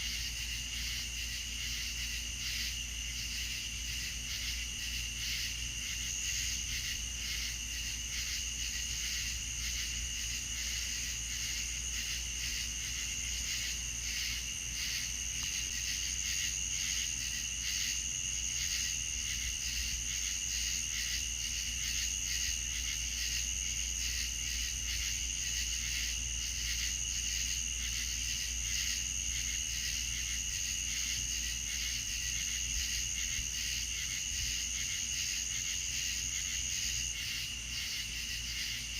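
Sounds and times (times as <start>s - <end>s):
crickets trilling: 0.0s - 38.9s.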